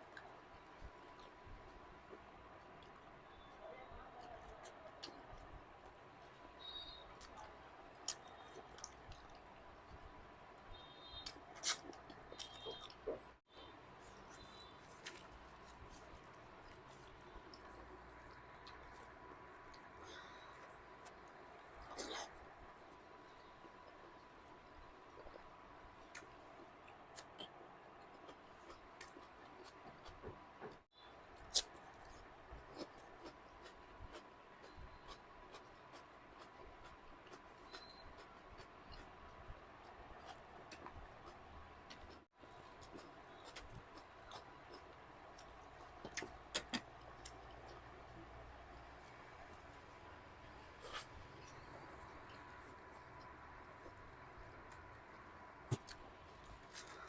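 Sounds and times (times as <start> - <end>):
soft chewing: 0.0 - 57.0
mouth clicks and squeaks: 10.7 - 13.3.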